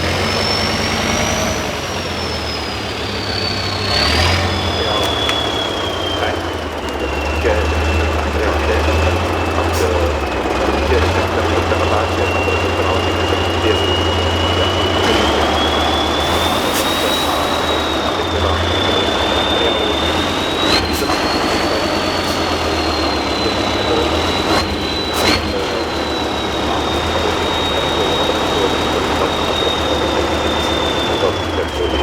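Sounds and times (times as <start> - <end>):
truck diesel engine droning: 0.0 - 32.0.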